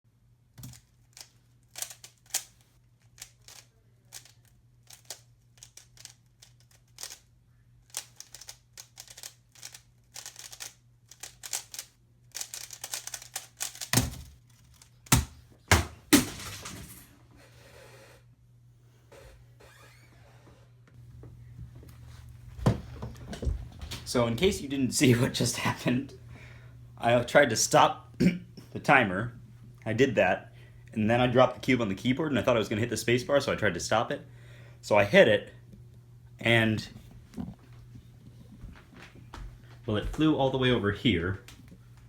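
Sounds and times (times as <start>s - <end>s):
cube clattering: 0.6s - 7.2s, 7.9s - 15.9s
puzzle cube clicking twists: 0.6s - 15.2s.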